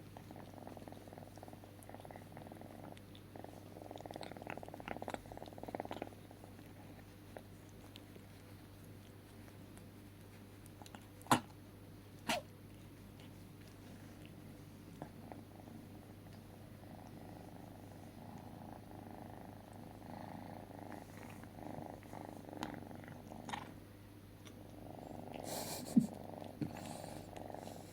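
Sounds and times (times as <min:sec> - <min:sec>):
pet purring: 0:00.0 - 0:11.6, 0:12.2 - 0:27.9.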